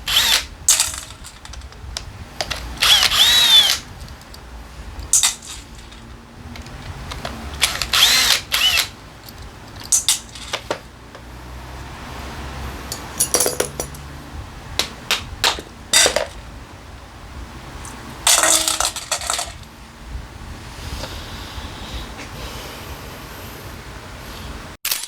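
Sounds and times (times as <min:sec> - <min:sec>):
small metal parts clinking: 0:00.1 - 0:10.9, 0:12.9 - 0:14.0, 0:15.4 - 0:16.4, 0:17.8 - 0:19.7.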